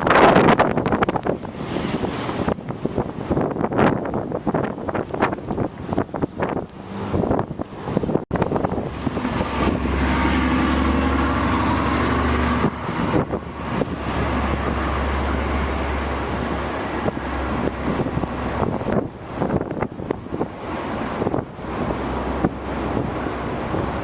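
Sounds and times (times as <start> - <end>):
wind gusting on microphone: 0.0 - 24.0
vehicle engine passing by: 8.8 - 18.8.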